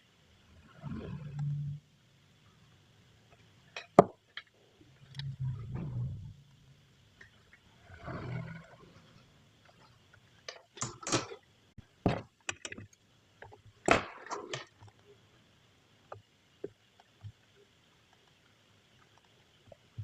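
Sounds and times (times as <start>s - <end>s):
sharp clicks and knocks: 10.5s - 11.4s, 12.0s - 15.0s.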